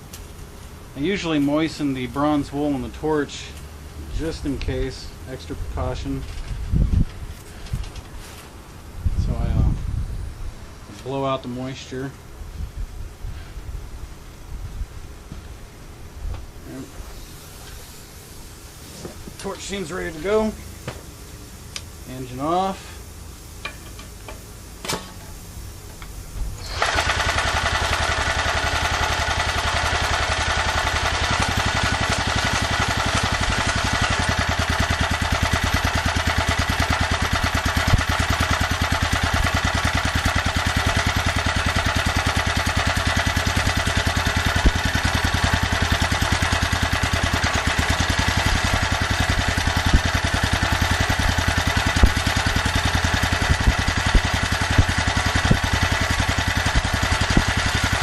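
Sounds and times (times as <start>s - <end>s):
small generator engine running: 26.5s - 58.0s
sharp engine pops: 51.0s - 52.5s, 53.4s - 58.0s.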